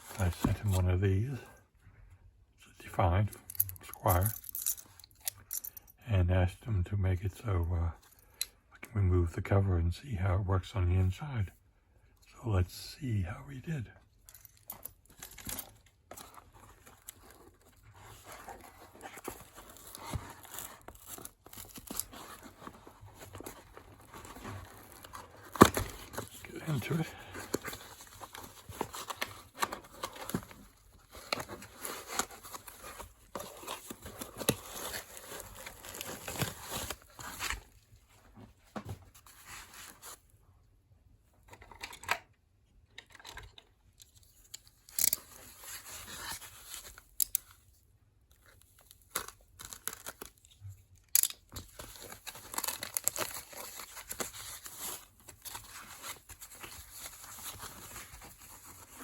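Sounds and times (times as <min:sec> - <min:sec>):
packaging tearing and crumpling: 0:16.7 - 0:37.7, 0:48.4 - 0:50.5, 0:51.1 - 0:59.0.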